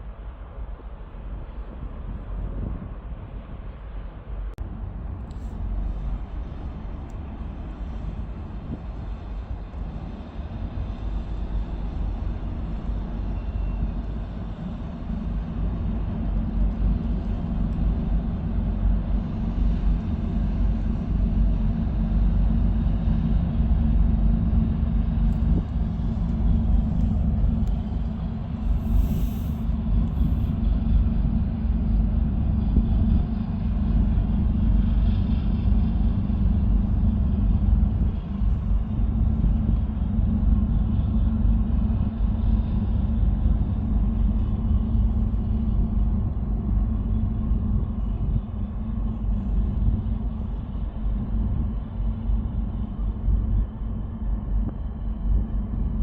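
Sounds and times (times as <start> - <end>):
low rumble: 0.0 - 56.0
brief high hiss: 28.7 - 30.4.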